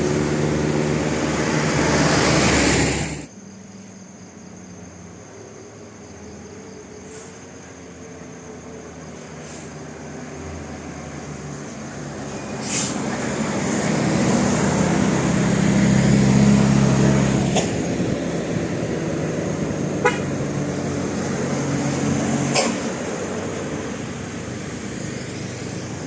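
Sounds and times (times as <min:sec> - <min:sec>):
bus passing: 0:00.0 - 0:26.0
low bus horn: 0:20.0 - 0:20.7.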